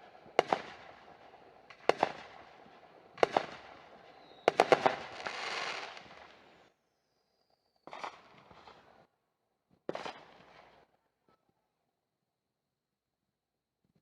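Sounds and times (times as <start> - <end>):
firework bangs: 0.0 - 6.6
fireworks crackling: 0.0 - 6.6.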